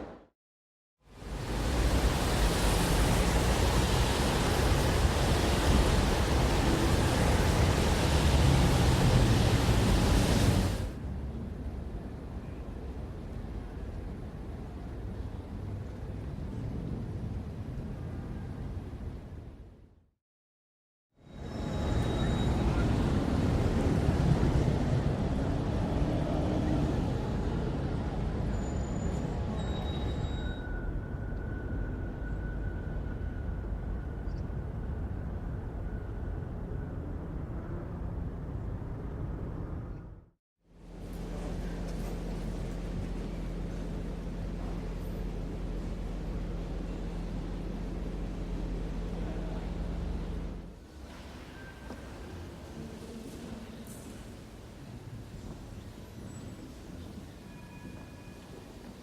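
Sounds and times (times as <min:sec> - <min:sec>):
city ambience with low rumble: 0:01.0 - 0:20.1, 0:21.1 - 0:59.0
road traffic rumble: 0:01.2 - 0:18.4, 0:40.8 - 0:51.1.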